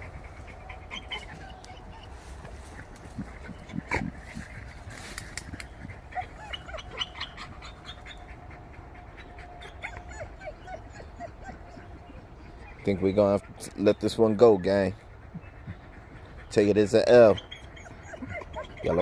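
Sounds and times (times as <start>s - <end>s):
dog panting: 0.0s - 19.0s
digging scrapes and snaps of roots: 4.4s - 5.8s.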